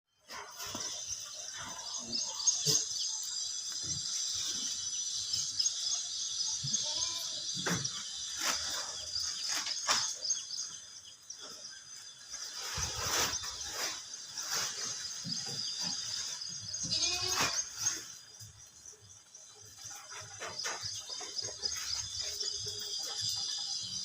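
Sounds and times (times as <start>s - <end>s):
goat kids bleating: 6.7s - 7.4s, 16.8s - 17.8s.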